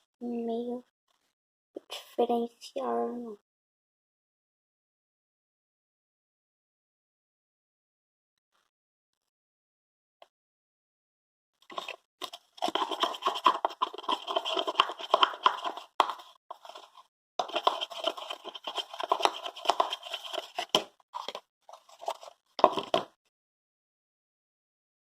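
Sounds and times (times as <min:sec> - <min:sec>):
utensil scraping a container: 0:11.7 - 0:23.1.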